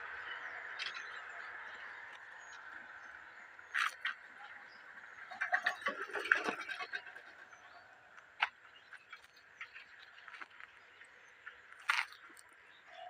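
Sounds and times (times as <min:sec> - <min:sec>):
rapid clicking calls: 0:03.7 - 0:04.6.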